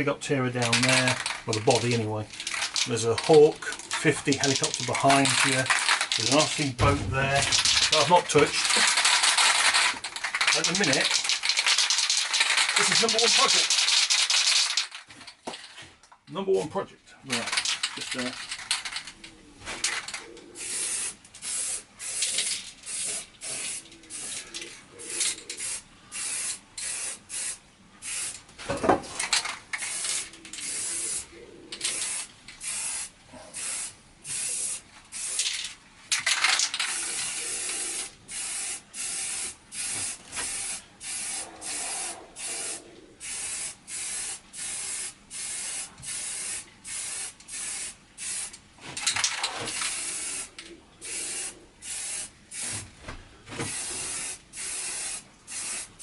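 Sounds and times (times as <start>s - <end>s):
aerosol can spraying: 7.5s - 14.9s, 20.6s - 24.4s, 25.0s - 28.4s, 29.8s - 35.6s, 36.6s - 48.6s, 49.7s - 52.8s, 53.6s - 56.0s.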